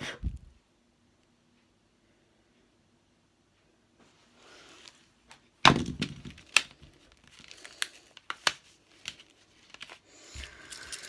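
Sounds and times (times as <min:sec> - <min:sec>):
handcuffs clicking: 0:10.3 - 0:11.0.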